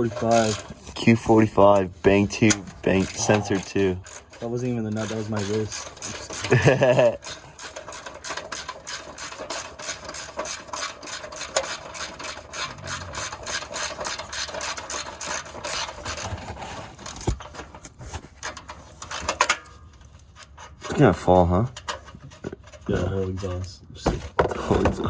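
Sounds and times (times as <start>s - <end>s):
ratchet wrench clicking: 0.1s - 0.7s, 7.2s - 15.9s.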